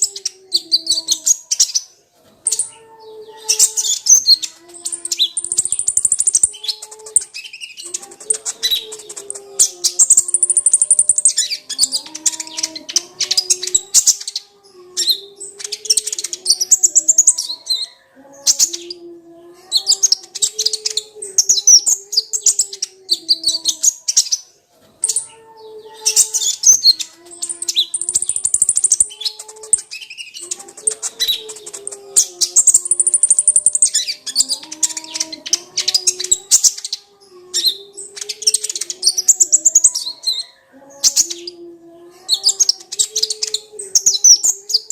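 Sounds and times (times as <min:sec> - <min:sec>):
sunbird singing high chattering phrases: 0:00.0 - 0:44.9.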